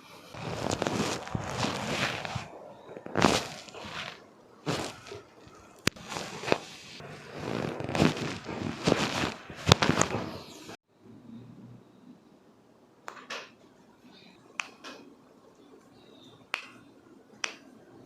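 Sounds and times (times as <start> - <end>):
hands rubbing on clothing: 0.4 - 10.8.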